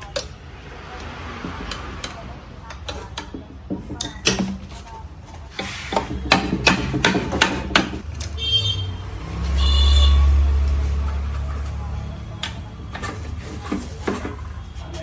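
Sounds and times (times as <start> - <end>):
loud low rumble: 0.2 - 3.7.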